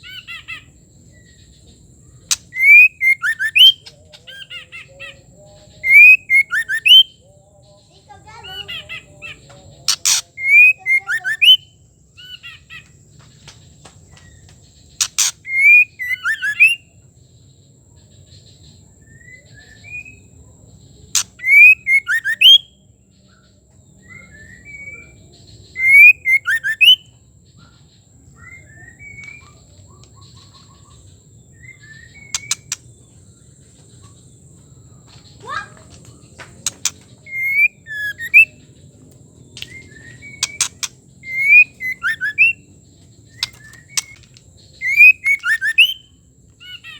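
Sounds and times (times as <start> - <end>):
sharp bird click: 2.3 - 3.7, 9.9 - 11.5, 15.0 - 16.8, 21.2 - 22.4, 32.3 - 32.9, 35.9 - 38.5, 39.5 - 42.5, 43.3 - 46.0
bird whistling phrases: 2.3 - 7.2, 8.3 - 11.7, 15.0 - 16.8, 21.2 - 22.7, 24.0 - 27.1, 31.6 - 32.8, 36.6 - 38.6, 39.6 - 42.6, 43.3 - 46.9.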